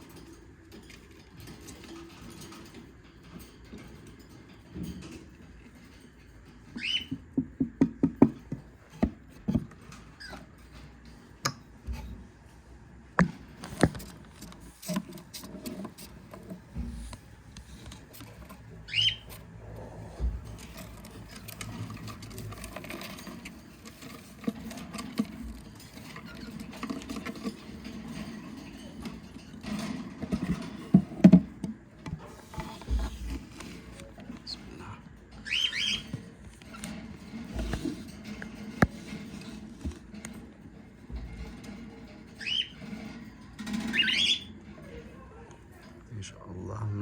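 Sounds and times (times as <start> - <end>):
cockatiel chirp: 6.8 - 7.1, 18.9 - 19.3, 35.4 - 36.1, 43.9 - 44.5
knocking and rustling of nest box: 7.1 - 9.9, 13.2 - 21.4, 30.2 - 34.5.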